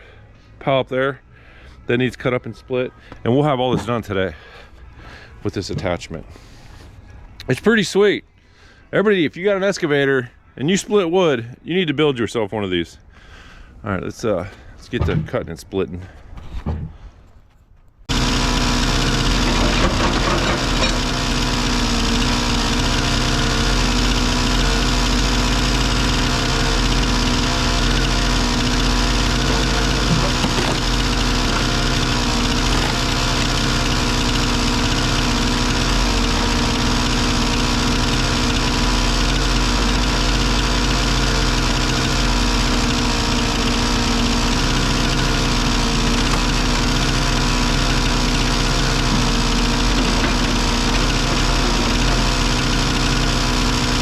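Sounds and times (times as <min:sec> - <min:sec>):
excavator diesel engine running: 0:18.1 - 0:54.0.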